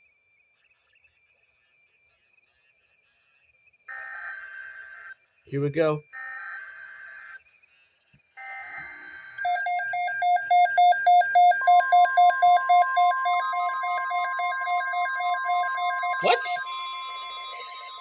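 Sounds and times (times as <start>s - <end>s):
pulsing alarm beep: 8.4s - 18.0s
steady alert tone: 12.5s - 18.0s.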